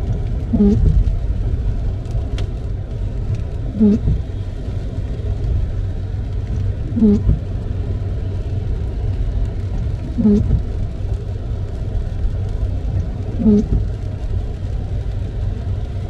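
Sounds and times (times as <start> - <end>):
windscreen wipers squeaking: 0.0 - 1.5, 3.4 - 4.6, 6.4 - 7.7, 9.7 - 11.1, 12.3 - 14.2
road and tyre rumble: 0.0 - 16.0.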